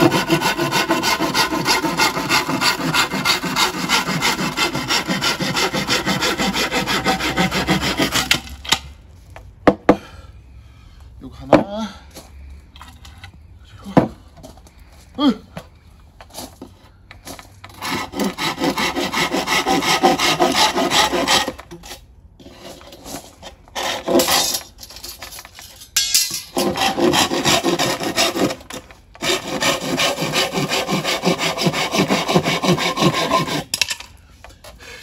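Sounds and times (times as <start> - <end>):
hand saw cutting bamboo: 0.0 - 8.8, 17.7 - 24.7, 26.5 - 33.9.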